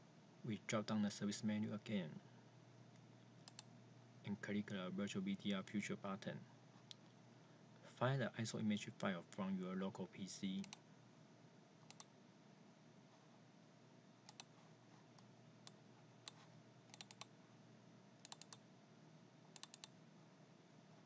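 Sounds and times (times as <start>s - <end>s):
low room hiss: 0.0s - 21.0s
computer mouse clicks: 3.4s - 3.7s, 10.6s - 10.8s, 11.8s - 12.1s, 14.3s - 17.3s, 18.2s - 18.6s, 19.5s - 20.0s.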